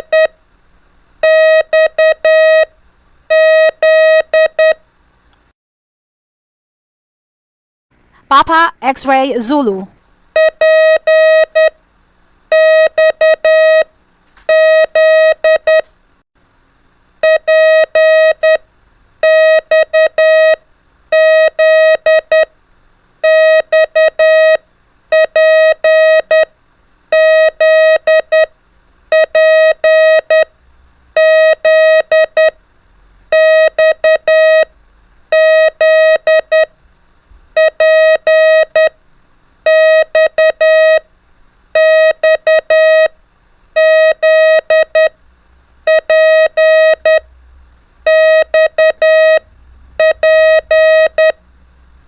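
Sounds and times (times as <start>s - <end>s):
morse code beeps: 43.8s - 45.1s, 45.9s - 47.2s, 48.1s - 49.4s, 50.0s - 51.4s.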